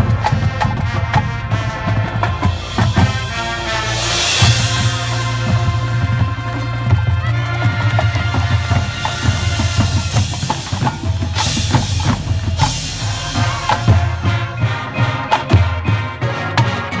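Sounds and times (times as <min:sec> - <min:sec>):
drums and percussion: 0:00.0 - 0:17.0
marching band playing: 0:00.0 - 0:17.0
bright wash of noise: 0:02.5 - 0:05.9.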